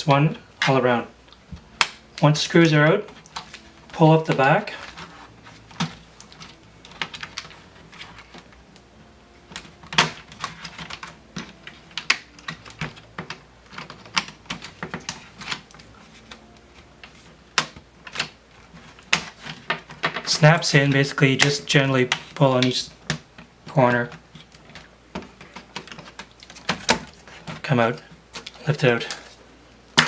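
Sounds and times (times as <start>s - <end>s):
plastic clips snapping: 9.5s - 16.4s.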